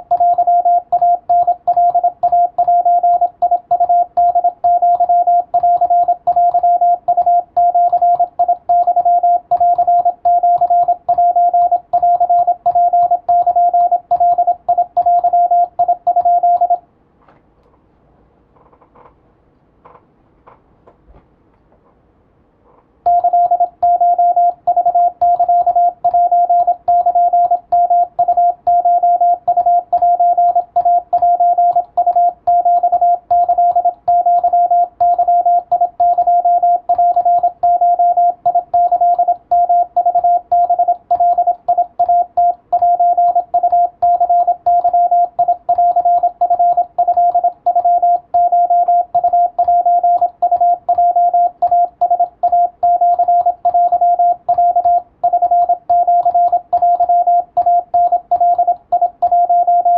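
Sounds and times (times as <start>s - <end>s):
morse code tone: 0.0s - 16.8s, 23.1s - 59.9s.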